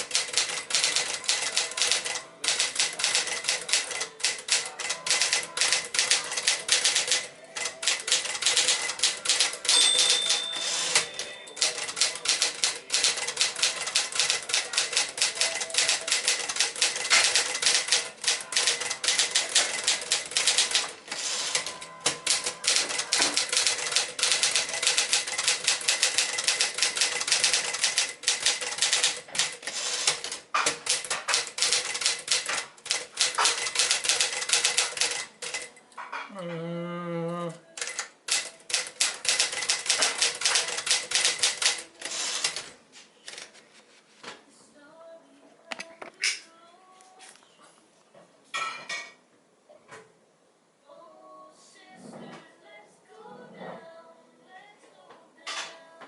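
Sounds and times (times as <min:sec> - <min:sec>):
typewriter keys clacking: 0:00.0 - 0:35.7, 0:37.8 - 0:42.7
typewriter bell ringing: 0:07.8 - 0:13.5.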